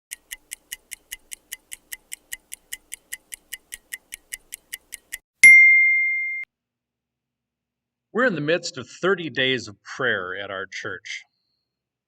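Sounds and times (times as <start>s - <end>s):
dial timer ticking: 0.1s - 5.2s
timer bell ding: 5.4s - 6.5s.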